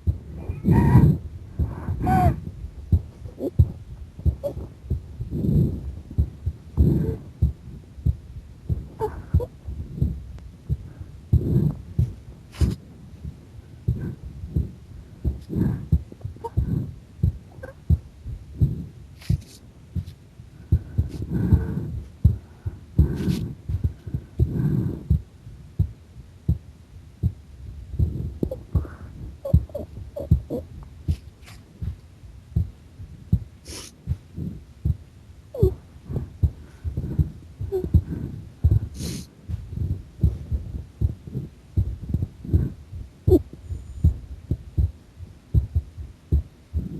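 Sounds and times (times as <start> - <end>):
heartbeat thumps: 0.0 - 46.9
scratchy rustle: 19.2 - 19.6.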